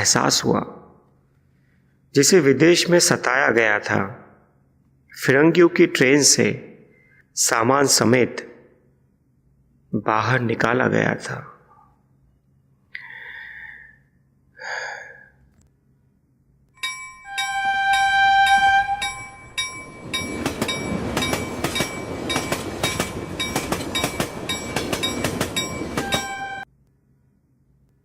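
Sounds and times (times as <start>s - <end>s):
train horn chord: 17.3s - 19.5s, 26.0s - 26.6s
train wheels clattering over rail joints: 19.6s - 26.4s.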